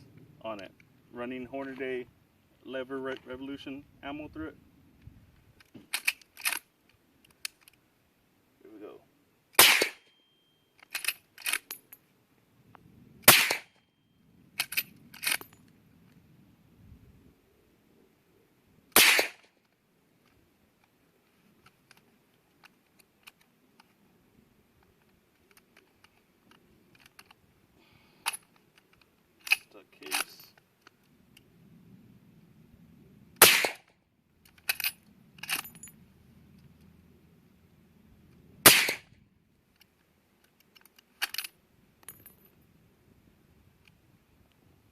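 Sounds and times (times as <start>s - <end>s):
rifle lever metallic clacks: 5.6s - 6.6s
suppressed rifle shot: 9.6s - 10.0s, 13.2s - 13.7s, 18.9s - 19.5s, 33.4s - 33.8s, 38.6s - 39.1s.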